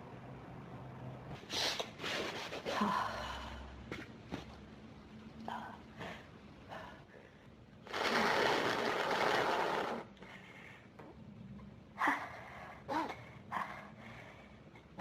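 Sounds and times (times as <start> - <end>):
person blowing nose: 1.5 - 2.8, 7.9 - 10.0.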